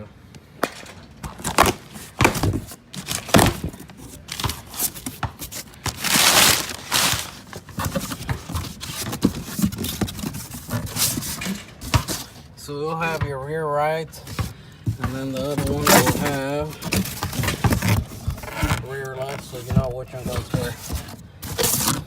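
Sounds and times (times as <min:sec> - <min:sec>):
knocks and handling noises: 0:00.3 - 0:12.5, 0:14.2 - 0:22.0
packaging tearing and crinkling: 0:01.3 - 0:11.5, 0:15.4 - 0:19.3, 0:20.3 - 0:22.0.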